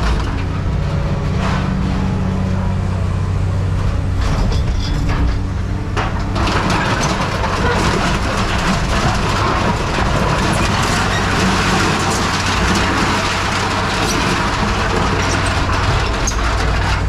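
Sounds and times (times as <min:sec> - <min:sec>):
clicks and metal crackling: 0:04.2 - 0:17.0.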